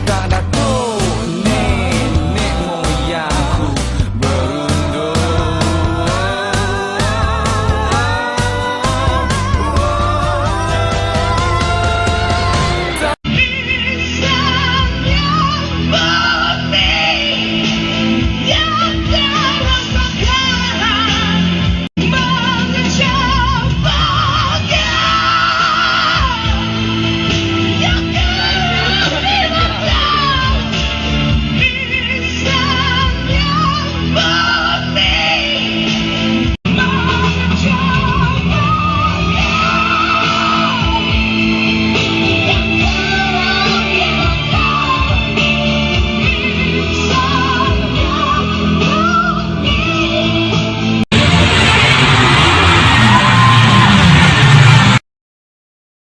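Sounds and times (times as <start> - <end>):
man singing rock vocals: 0.0 - 13.2
rock band playing: 0.0 - 13.7, 50.2 - 55.0
male rock singer: 0.0 - 26.8
rock band with electric guitar: 0.0 - 55.0.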